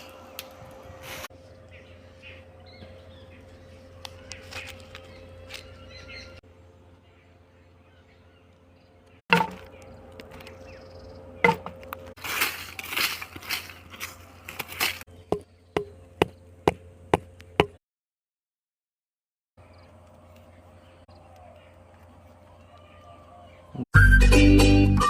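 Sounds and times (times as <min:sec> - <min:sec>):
rustling and scraping: 0:04.0 - 0:05.8, 0:11.5 - 0:15.1
sharp chopping knocks: 0:09.3 - 0:09.8, 0:11.4 - 0:11.8.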